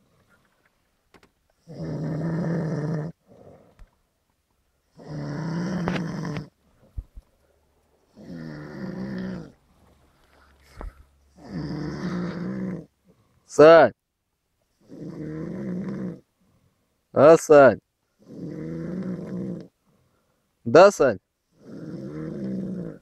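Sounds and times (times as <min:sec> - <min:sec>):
quiet breathing: 0:00.0 - 0:00.9, 0:06.6 - 0:11.4, 0:12.9 - 0:13.6, 0:16.2 - 0:17.1, 0:19.2 - 0:20.6
man snoring loudly: 0:01.6 - 0:03.7, 0:05.0 - 0:06.5, 0:08.1 - 0:09.6, 0:11.4 - 0:12.9, 0:14.8 - 0:16.2, 0:18.2 - 0:19.7, 0:21.5 - 0:23.0.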